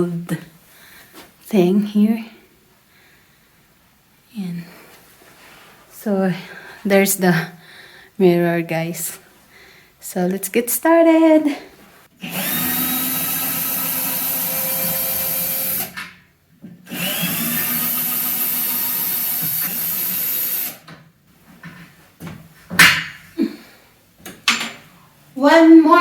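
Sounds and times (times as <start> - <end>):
power drill running: 12.2 - 16.0, 16.9 - 20.9.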